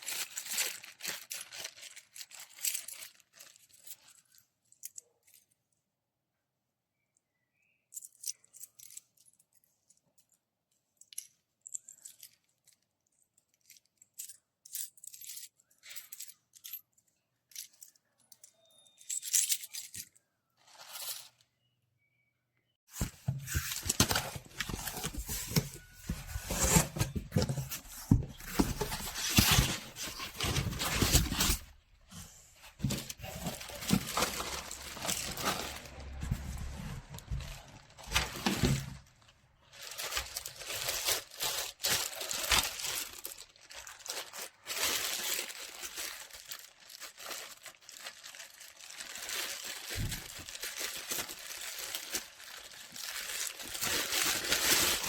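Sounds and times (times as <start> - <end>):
dense rustling and scraping: 22.9 - 43.4, 53.1 - 55.0.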